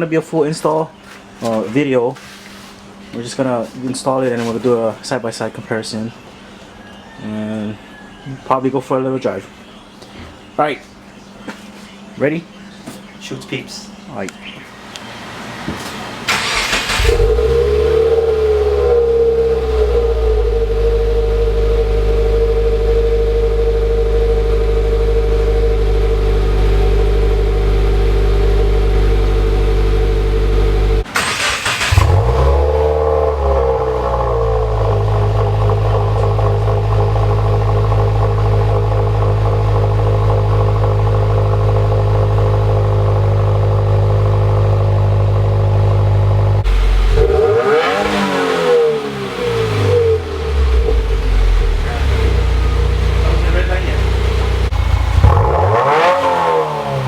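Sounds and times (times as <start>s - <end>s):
car engine idling and revving: 14.9s - 57.0s.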